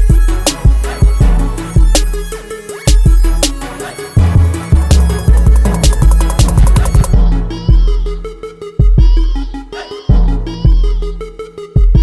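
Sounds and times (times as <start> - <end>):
electronic dance music: 0.8 - 7.4.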